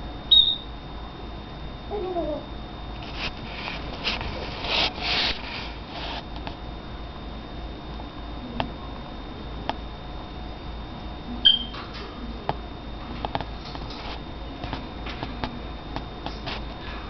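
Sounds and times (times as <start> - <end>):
parrot high whistle: 0.3 - 0.7, 11.4 - 11.7.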